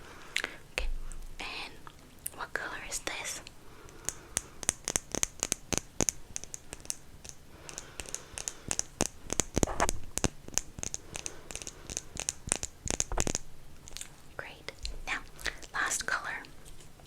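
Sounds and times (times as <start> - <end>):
crisp tapping and clicking: 3.4 - 17.0.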